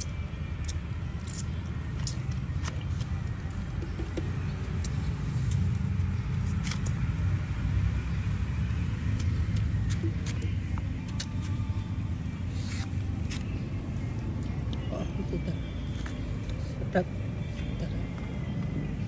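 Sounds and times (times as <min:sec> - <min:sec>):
street traffic rumble: 0:00.0 - 0:19.0.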